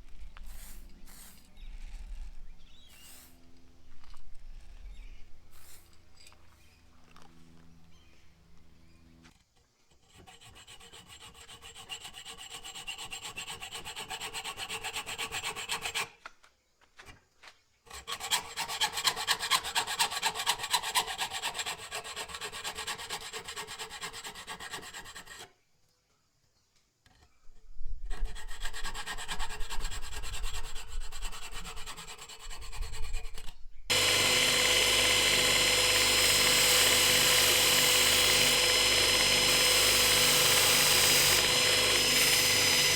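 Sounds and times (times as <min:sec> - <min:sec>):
hand filing strokes: 0:00.4 - 0:02.2, 0:02.8 - 0:03.5, 0:09.9 - 0:16.1, 0:17.9 - 0:25.5, 0:28.1 - 0:42.9
small power tool running: 0:33.4 - 0:42.9.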